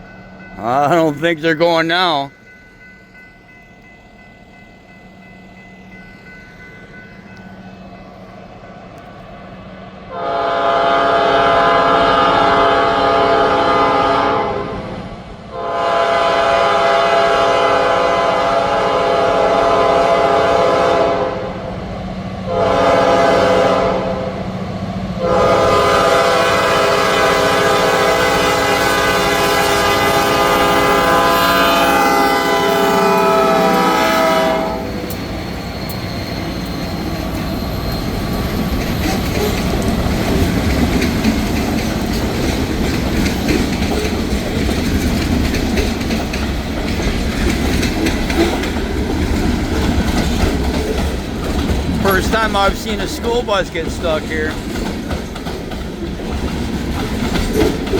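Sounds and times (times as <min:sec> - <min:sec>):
locomotive air horn blasts: 0:10.1 - 0:14.8, 0:15.5 - 0:21.6, 0:22.5 - 0:24.4, 0:25.2 - 0:34.9
train wheels clattering on rails: 0:25.5 - 0:57.9.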